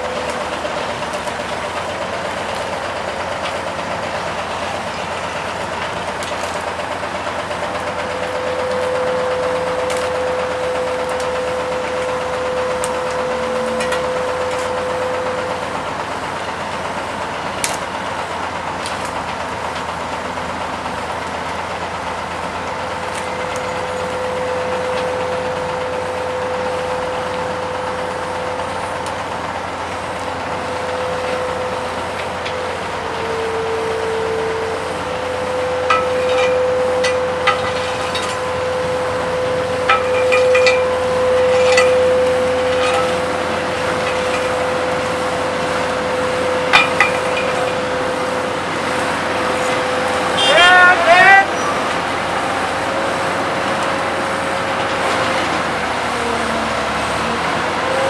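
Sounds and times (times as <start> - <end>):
heavy diesel engines running: 0.0 - 58.0
high whine: 8.4 - 16.1.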